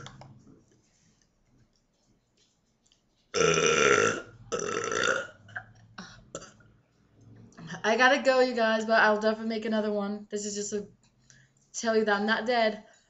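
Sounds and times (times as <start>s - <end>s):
woman burping: 3.4s - 6.6s.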